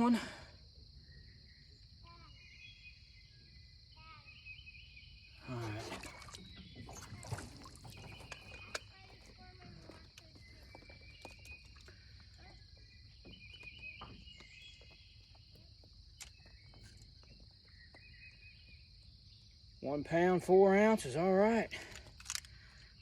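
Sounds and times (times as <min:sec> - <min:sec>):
bird chirps: 0:01.0 - 0:19.6
small clicks: 0:21.8 - 0:22.9.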